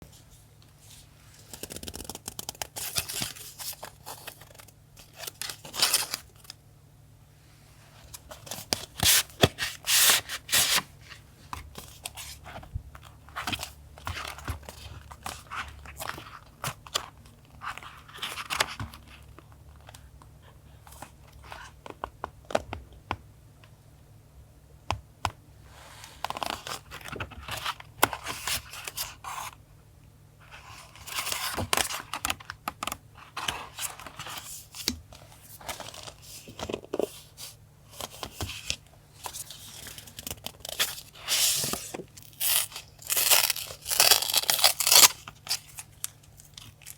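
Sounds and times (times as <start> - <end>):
paper tearing: 42.4 - 45.2.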